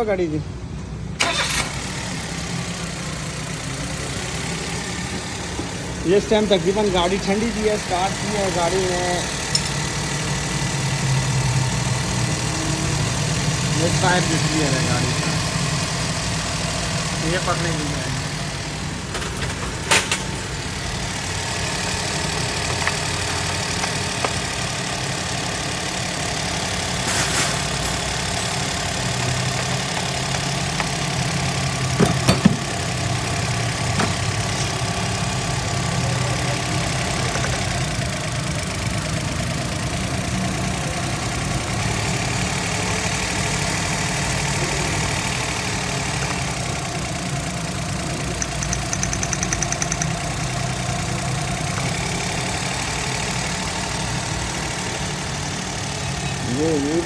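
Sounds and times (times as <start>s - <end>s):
small car engine idling: 0.0s - 57.0s
sharp engine clicks: 1.2s - 2.5s, 6.2s - 12.2s, 16.2s - 26.8s, 27.9s - 57.0s.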